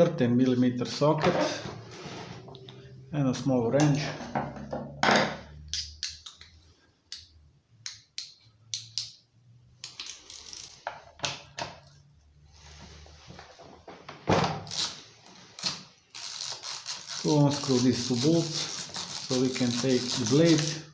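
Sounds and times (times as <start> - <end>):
wrench clicking on metal nuts: 15.6 - 20.9.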